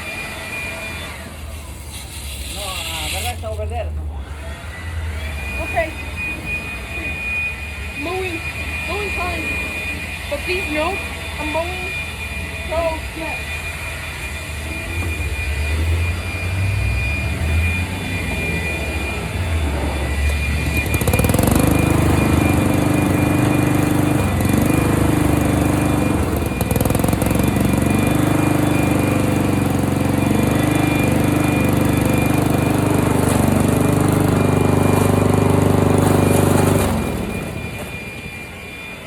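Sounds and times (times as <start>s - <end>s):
lawn mower shredding leaves: 15.8s - 37.9s.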